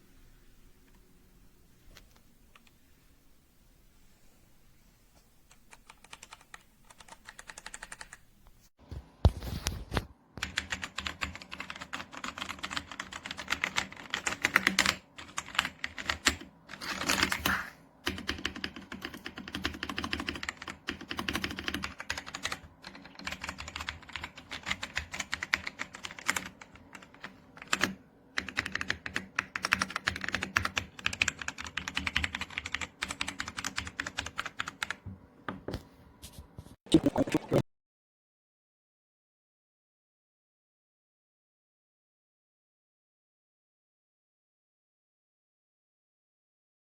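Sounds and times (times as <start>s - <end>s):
mechanical keyboard typing: 5.5s - 8.2s, 10.4s - 35.0s.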